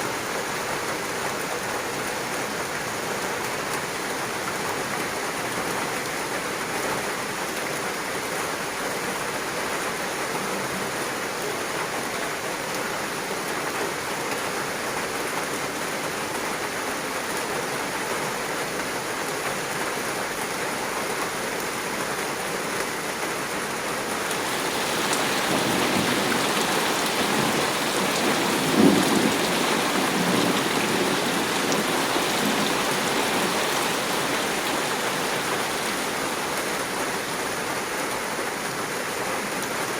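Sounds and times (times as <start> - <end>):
heavy rain falling: 23.8 - 38.1
low rumble of thunder: 24.3 - 37.2.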